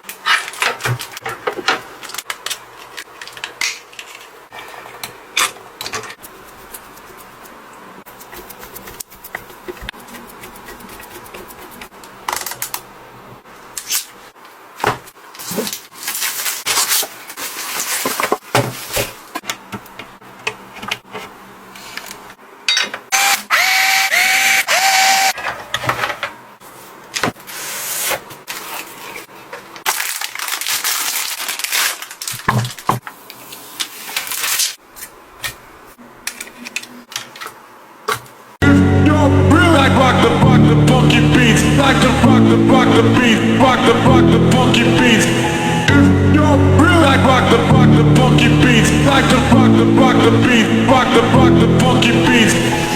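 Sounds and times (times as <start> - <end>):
plastic clicks and rustles: 0.0 - 4.4.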